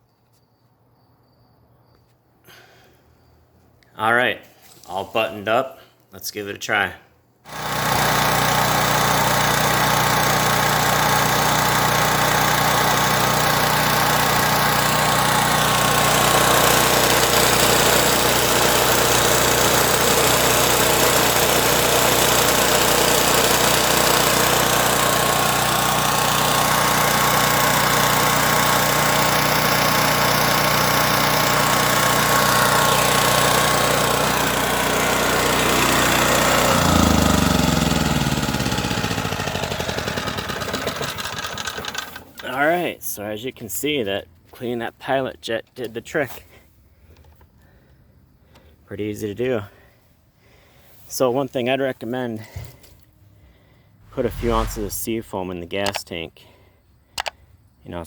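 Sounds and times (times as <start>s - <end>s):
generator engine running: 7.5s - 42.4s.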